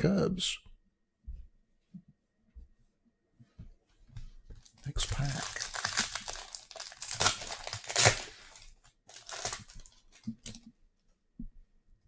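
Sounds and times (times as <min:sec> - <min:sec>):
foil wrapper tearing and crinkling: 0:04.7 - 0:10.6.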